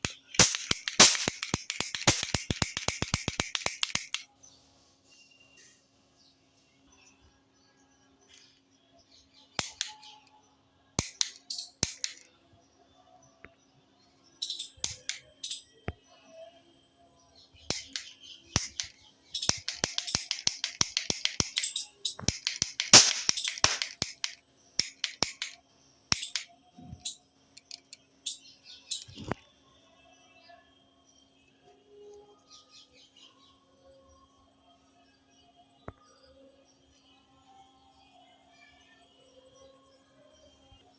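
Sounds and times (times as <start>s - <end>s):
cap gun firing: 0.0s - 4.2s, 9.6s - 9.9s, 11.0s - 12.2s, 14.4s - 15.6s, 17.7s - 29.2s.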